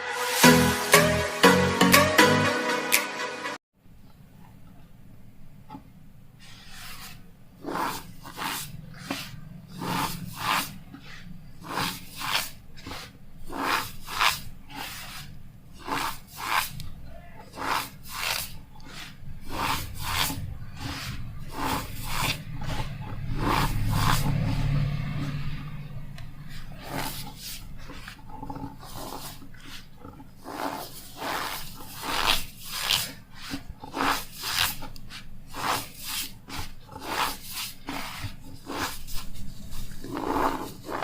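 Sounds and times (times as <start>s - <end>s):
cornstarch squeaky crunch: 26.5s - 41.0s.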